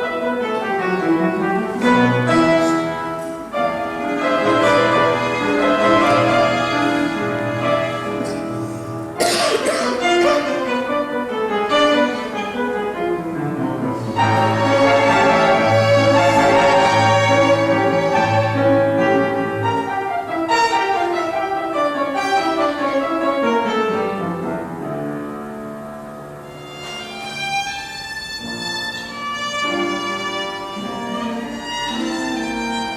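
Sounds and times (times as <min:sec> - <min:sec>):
cello long low notes: 0:00.0 - 0:09.1, 0:10.2 - 0:20.1
classical chamber music: 0:00.0 - 0:32.9.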